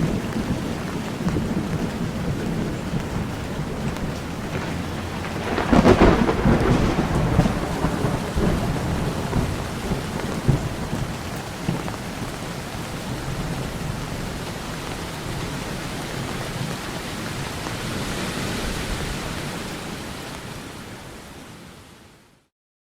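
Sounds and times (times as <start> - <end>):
thunder clap rumbling: 0.0 - 17.6
steady heavy rain: 0.0 - 22.5.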